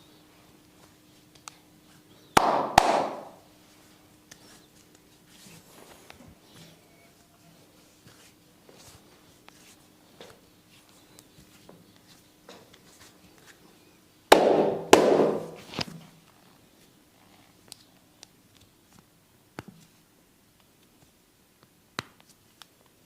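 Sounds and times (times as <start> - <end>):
hands slapping body: 2.4 - 3.4, 14.3 - 15.6
hands rubbing skin: 7.8 - 9.9.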